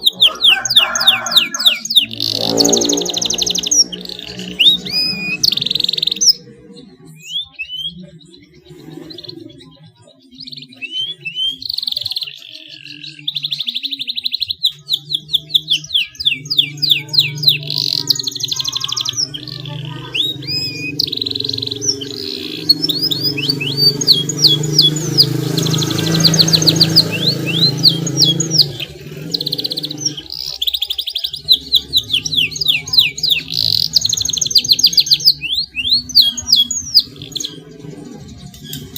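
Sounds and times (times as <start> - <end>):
canary singing: 0.0 - 38.9.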